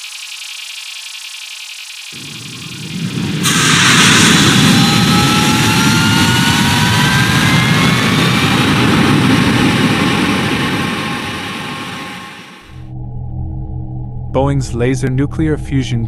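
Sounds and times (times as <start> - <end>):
jet engine roaring with whine: 0.0 - 12.7.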